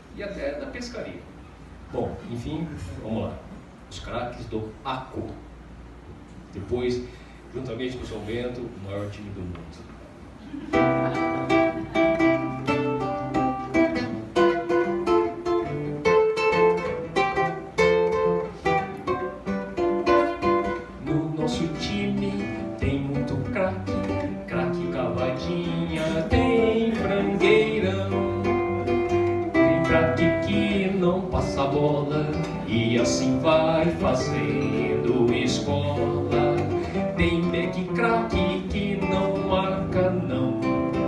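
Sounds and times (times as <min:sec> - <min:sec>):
acoustic guitar strumming chords: 0:10.6 - 0:41.0.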